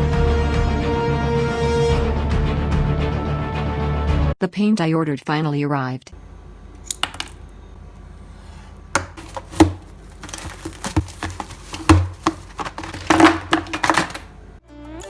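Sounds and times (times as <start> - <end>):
packaging crinkling and tearing: 9.0 - 14.3.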